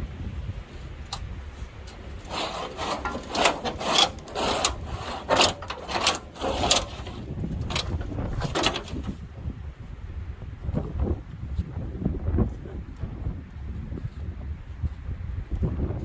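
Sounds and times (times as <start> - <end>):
wind on microphone: 0.0 - 16.0
rough scraping strokes: 1.5 - 9.2.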